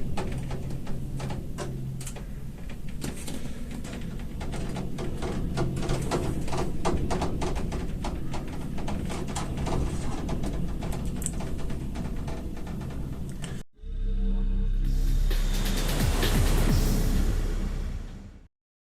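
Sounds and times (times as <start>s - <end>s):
cables knocking on window glass: 0.0s - 13.6s.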